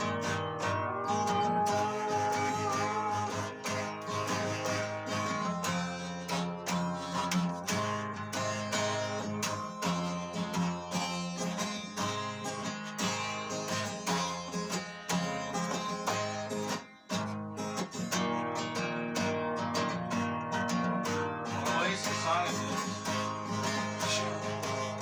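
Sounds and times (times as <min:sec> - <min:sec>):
strummed acoustic guitar: 0:00.0 - 0:25.0.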